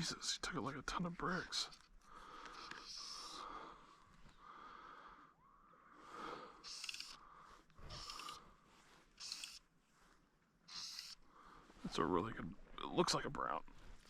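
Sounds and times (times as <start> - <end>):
person breathing hard: 2.0 - 8.7.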